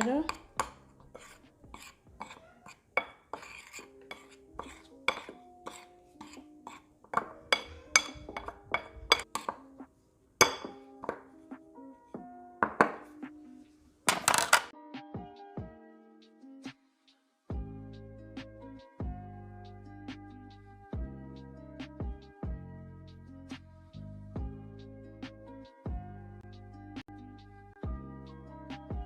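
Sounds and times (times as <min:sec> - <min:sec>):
utensil scraping against a bowl: 0:00.0 - 0:09.6, 0:10.4 - 0:11.2
light background music: 0:00.0 - 0:29.0.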